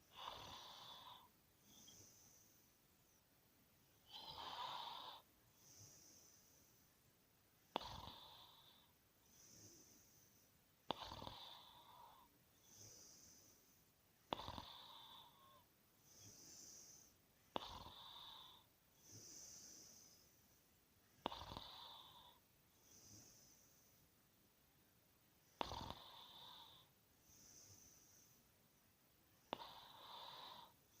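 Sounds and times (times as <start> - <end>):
soft breathy hiss: 0.0 - 31.0
person snoring: 0.1 - 2.5, 4.1 - 6.6, 7.7 - 10.2, 10.9 - 13.5, 14.3 - 20.3, 21.2 - 23.8, 25.6 - 28.4, 29.5 - 30.8.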